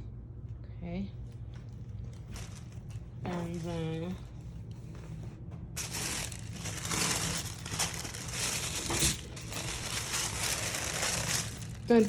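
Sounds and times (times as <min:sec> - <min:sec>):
wrapping paper crinkling: 0:01.9 - 0:03.0, 0:05.8 - 0:12.0.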